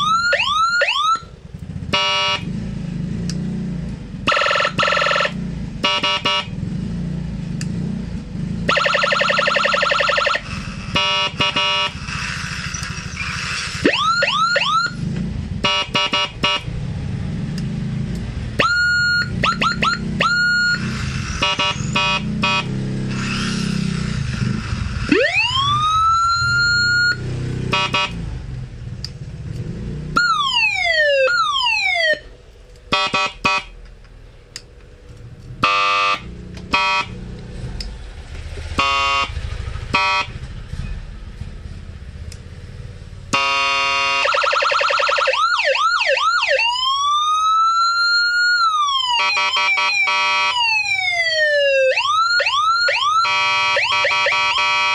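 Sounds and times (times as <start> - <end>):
electronic siren sounds: 0.0 - 2.5, 4.2 - 6.5, 8.7 - 16.6, 18.6 - 28.2, 30.2 - 32.3, 43.3 - 54.9.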